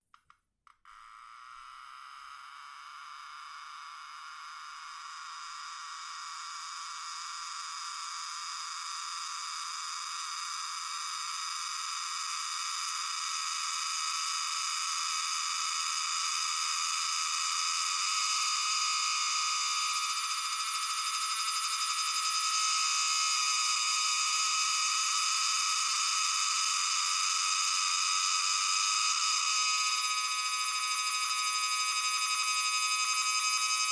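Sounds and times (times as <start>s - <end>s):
cicada high metallic buzz: 17.3s - 33.9s.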